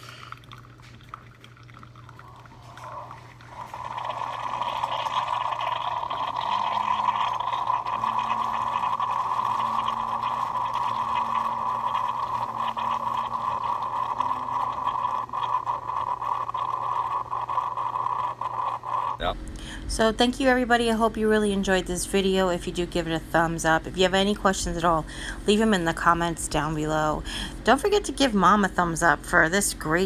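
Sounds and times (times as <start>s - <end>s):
coffee streaming into mug: 0.0s - 19.2s
low pump hum: 0.0s - 30.0s.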